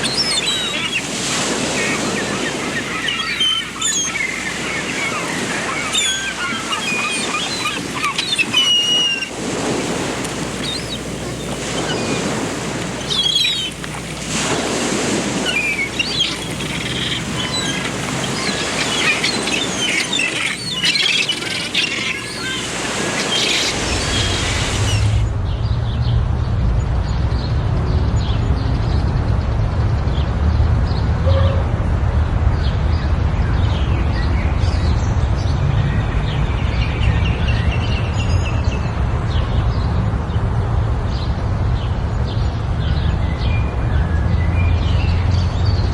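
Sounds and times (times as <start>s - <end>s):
small birds chirping: 0.0s - 14.6s, 15.4s - 25.2s.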